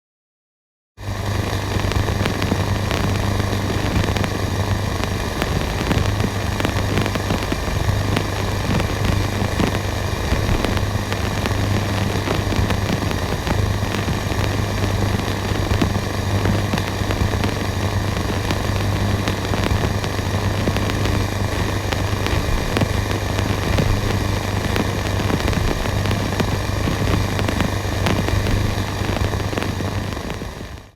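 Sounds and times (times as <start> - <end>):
crackling radio static hiss: 1.0 - 30.9
low steady hum: 1.0 - 30.9.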